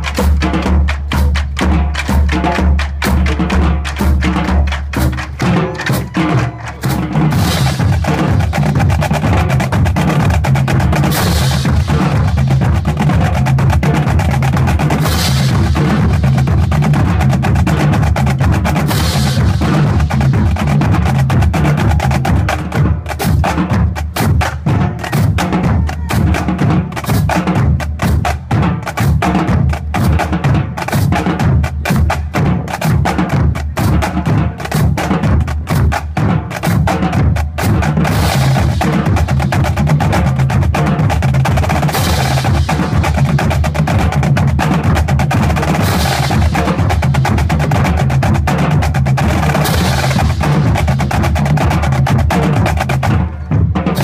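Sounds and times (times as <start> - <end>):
tuned bass drums: 7.1 - 26.4, 37.0 - 54.0.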